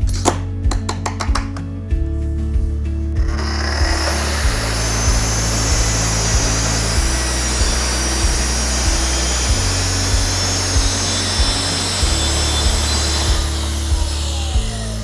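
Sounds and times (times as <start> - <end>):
background music with steady beat: 0.0 - 15.0
track saw cutting: 3.2 - 15.0.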